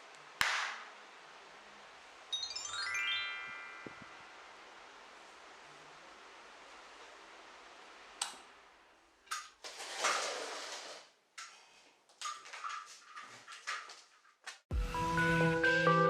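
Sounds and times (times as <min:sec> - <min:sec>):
faint steady hiss: 0:00.0 - 0:09.7.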